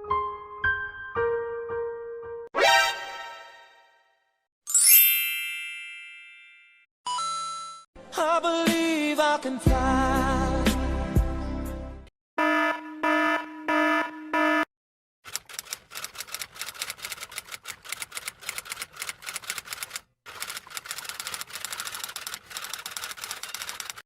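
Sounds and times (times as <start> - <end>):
rapid key clicks: 15.3 - 24.0.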